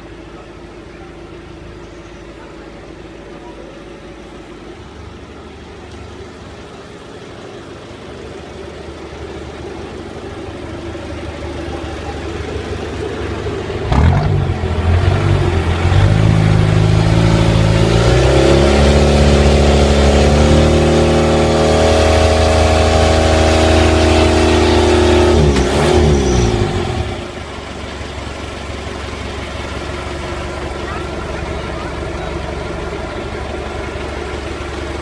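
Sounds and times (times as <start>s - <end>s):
off-road vehicle engine revving: 7.7s - 35.0s.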